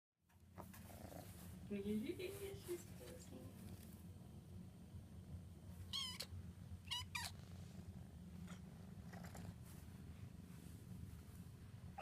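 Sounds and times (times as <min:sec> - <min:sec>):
low purr: 0:00.8 - 0:01.4, 0:07.4 - 0:09.7
kitten squeaking: 0:05.9 - 0:06.3, 0:06.9 - 0:07.4.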